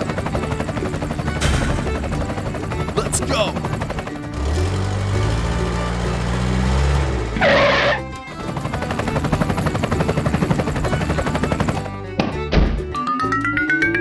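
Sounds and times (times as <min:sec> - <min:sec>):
background music with steady beat: 0:00.0 - 0:14.0.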